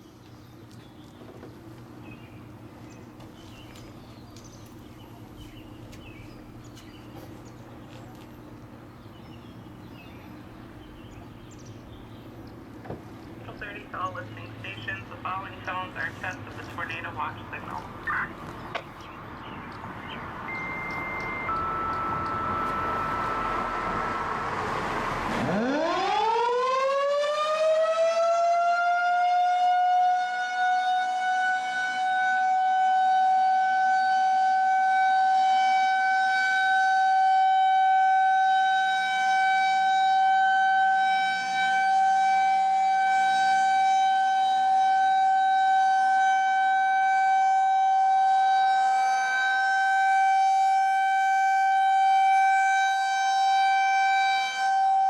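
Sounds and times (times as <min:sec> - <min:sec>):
warning siren winding up: 0:20.5 - 0:55.0.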